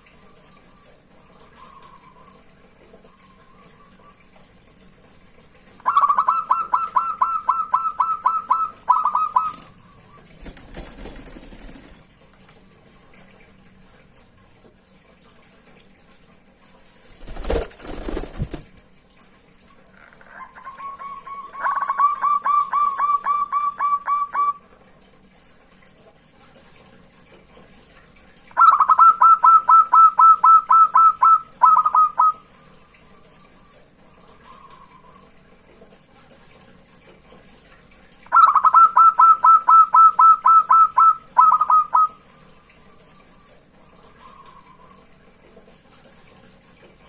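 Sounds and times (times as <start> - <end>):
dove cooing: 5.8 - 9.8, 20.0 - 24.6, 28.6 - 32.4, 38.3 - 42.2
wing flutter rustle: 9.4 - 12.1, 16.8 - 18.8.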